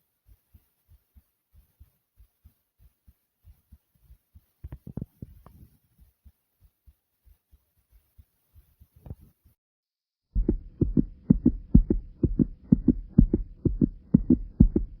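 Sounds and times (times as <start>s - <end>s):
fast heartbeat thumps: 10.4s - 15.0s.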